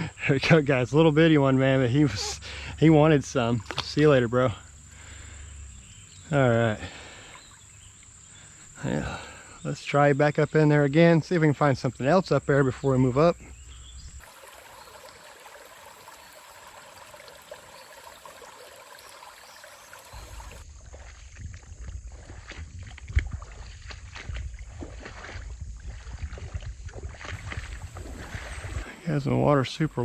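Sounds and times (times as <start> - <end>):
creek water hissing: 1.6 - 9.6, 14.1 - 20.6, 27.4 - 30.0
wading splashes in water: 6.8 - 8.2, 14.2 - 29.8.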